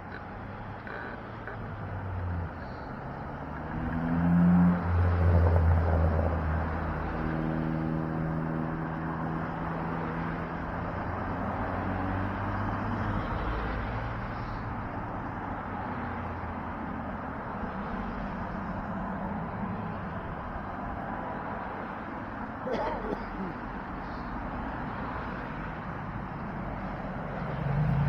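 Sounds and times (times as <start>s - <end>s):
vehicle engine running: 0.0s - 4.2s
traffic rumble: 0.0s - 28.0s.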